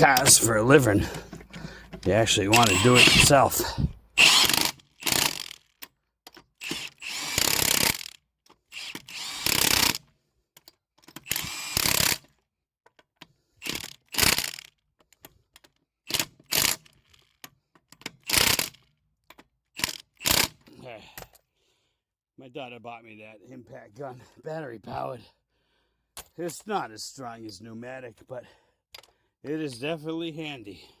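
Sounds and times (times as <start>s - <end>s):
impact wrench bursts: 0.1s - 5.8s, 6.6s - 10.1s, 11.2s - 12.3s, 13.6s - 14.7s, 16.1s - 16.9s, 18.2s - 18.8s, 19.8s - 20.6s.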